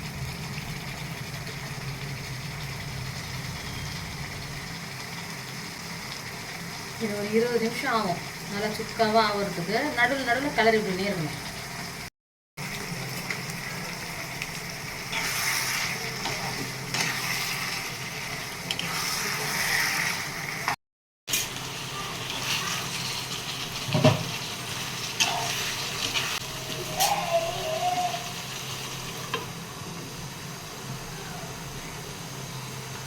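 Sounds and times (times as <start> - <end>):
chicken sizzling in a pan: 0.0 - 33.0
spoon scraping a pan: 15.1 - 17.9, 18.7 - 20.4, 25.2 - 27.2.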